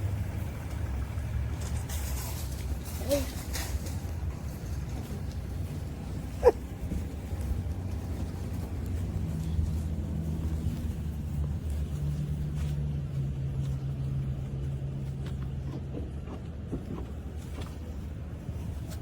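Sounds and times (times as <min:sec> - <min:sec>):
vehicle engine rumbling: 0:00.0 - 0:19.0.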